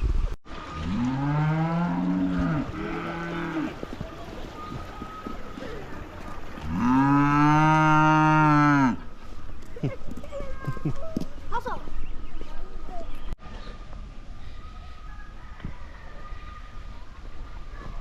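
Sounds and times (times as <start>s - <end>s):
cow mooing: 0.9s - 3.8s, 6.6s - 9.0s.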